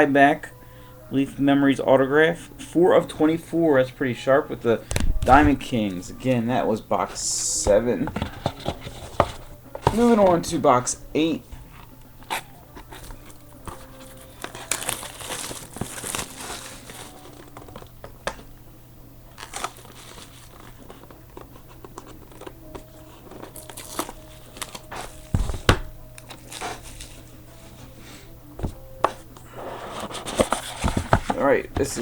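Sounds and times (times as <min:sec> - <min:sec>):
loud thumps: 0:04.9 - 0:05.7
clicks and handling noise: 0:07.6 - 0:10.4, 0:11.6 - 0:18.5, 0:19.3 - 0:27.9
plastic wrap crinkling and tearing: 0:12.3 - 0:18.4, 0:19.3 - 0:25.4, 0:26.1 - 0:27.3.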